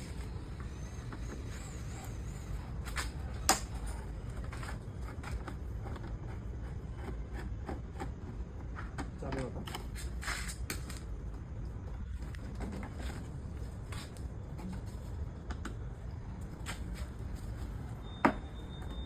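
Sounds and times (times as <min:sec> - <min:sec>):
steady low rumble: 0:09.7 - 0:18.1.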